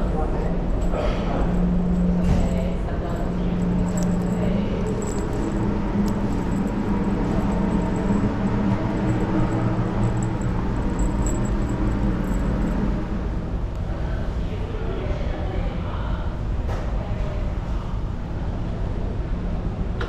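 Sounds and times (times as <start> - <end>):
engine drone: 0.0 - 13.7.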